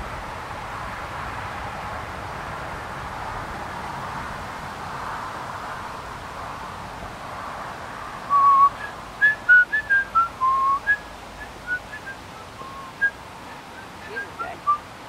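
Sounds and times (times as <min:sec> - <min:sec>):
soft hiss: 0:00.0 - 0:15.0
person whistling a tune: 0:08.3 - 0:14.8.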